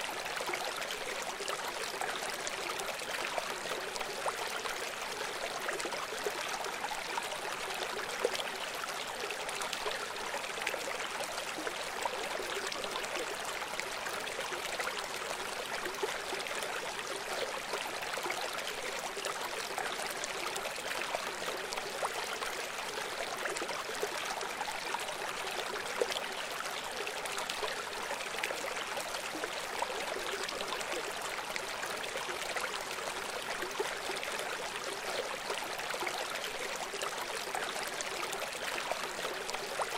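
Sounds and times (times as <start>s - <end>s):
river water flowing: 0.0s - 39.9s.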